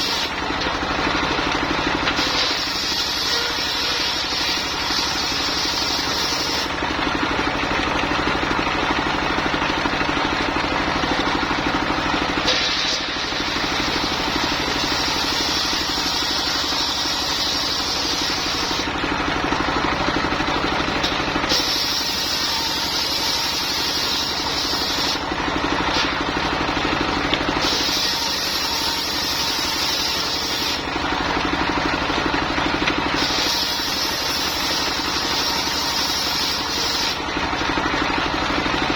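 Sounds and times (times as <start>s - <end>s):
circular sawmill sawing wood: 0.0s - 38.9s
high-pitched saw whine: 1.8s - 6.8s, 12.4s - 18.9s, 21.0s - 25.3s, 27.6s - 30.9s, 33.1s - 37.3s.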